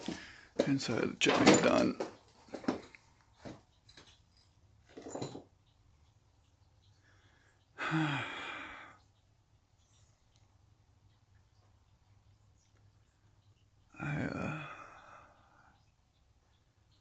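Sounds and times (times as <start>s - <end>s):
faint breath: 7.0s - 9.0s, 14.0s - 15.9s
man sighing: 7.8s - 9.0s, 14.0s - 15.6s.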